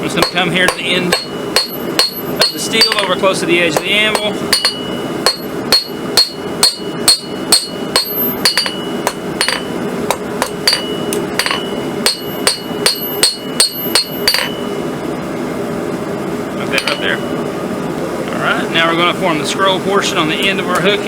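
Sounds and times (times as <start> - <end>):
hammer ringing on steel bar: 0.2 - 3.2, 4.1 - 9.7, 10.4 - 14.7.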